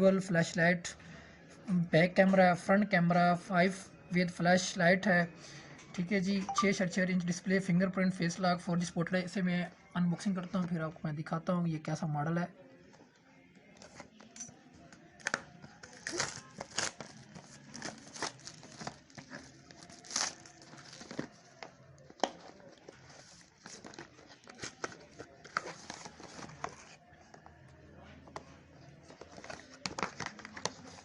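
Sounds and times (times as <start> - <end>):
packaging crinkling and tearing: 15.2 - 21.6.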